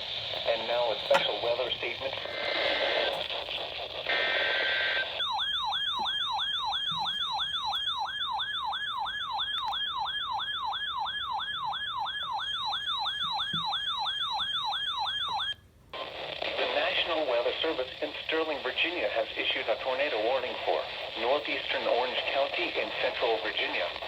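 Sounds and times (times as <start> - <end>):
radio hiss: 0.0 - 5.2, 16.0 - 24.0
warbling siren alert tone: 5.2 - 15.6.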